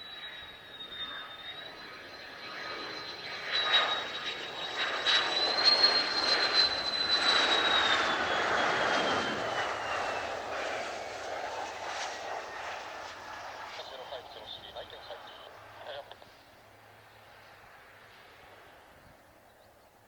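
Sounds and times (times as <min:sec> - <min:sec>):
high jet whine: 0:00.0 - 0:19.5
jet aircraft passing: 0:00.0 - 0:20.0.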